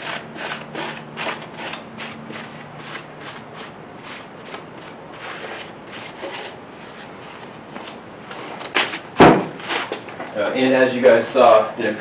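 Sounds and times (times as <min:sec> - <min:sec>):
loud knocks: 0:09.2 - 0:09.6.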